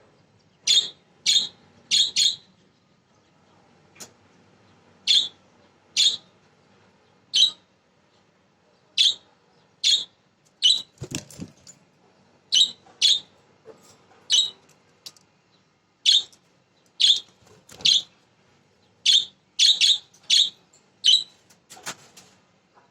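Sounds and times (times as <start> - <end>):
budgerigars chirping: 0.7 - 2.5, 5.1 - 5.4, 6.0 - 6.3, 7.4 - 7.6, 9.8 - 10.9, 12.5 - 13.3, 14.3 - 14.6, 16.1 - 16.3, 17.0 - 18.1, 19.0 - 21.4.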